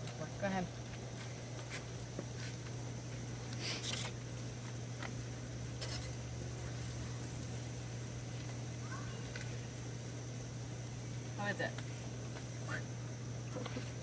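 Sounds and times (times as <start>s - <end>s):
steady low hum: 0.0s - 14.0s
utensil scraping a plate: 5.8s - 6.2s.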